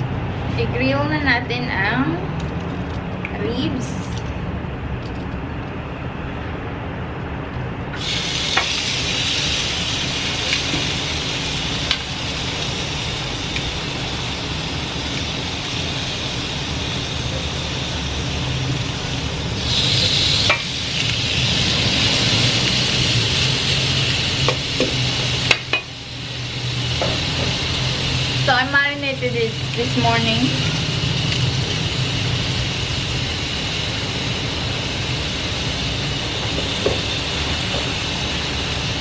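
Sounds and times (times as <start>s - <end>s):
ribs sizzling on grill: 8.0s - 39.0s.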